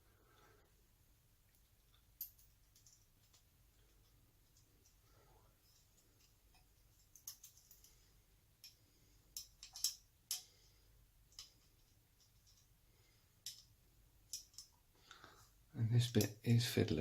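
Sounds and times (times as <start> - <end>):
small metal parts clicking: 1.9 - 5.0, 5.7 - 8.0, 8.6 - 10.6, 11.3 - 12.7, 13.4 - 14.8.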